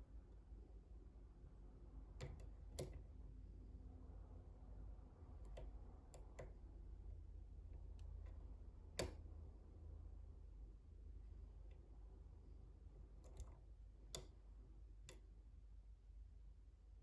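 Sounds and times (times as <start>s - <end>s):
steady low hum: 0.0s - 17.0s
lock pick clicks: 7.8s - 9.2s.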